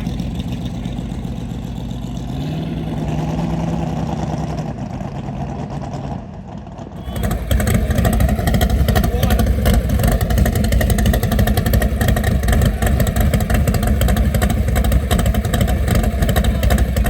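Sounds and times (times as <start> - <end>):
car engine idling and revving: 0.0 - 17.0.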